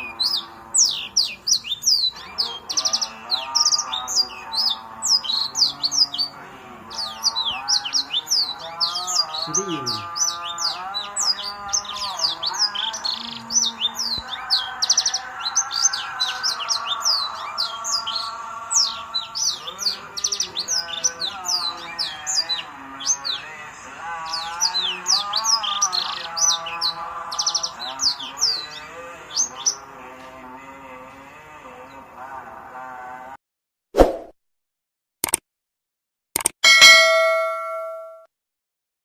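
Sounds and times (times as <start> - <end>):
bird chirping rapidly: 0.0 - 23.5.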